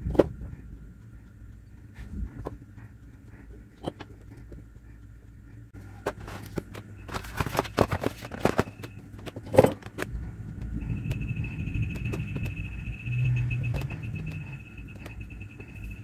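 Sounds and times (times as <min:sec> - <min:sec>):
steady low hum: 0:00.0 - 0:16.0
tools clicking and knocking on workbench: 0:07.4 - 0:10.1.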